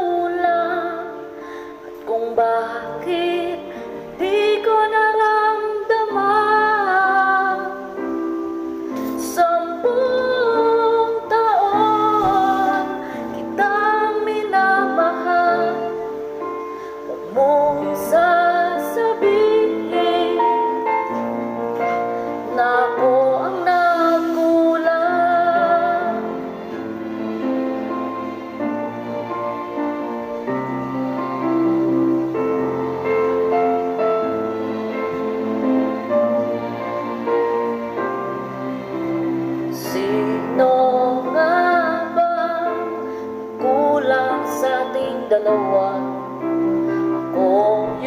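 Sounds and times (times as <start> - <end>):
woman singing a slow ballad: 0.0 - 21.2, 22.4 - 26.5, 39.7 - 46.6, 47.2 - 48.0
soft instrumental accompaniment: 0.0 - 48.0.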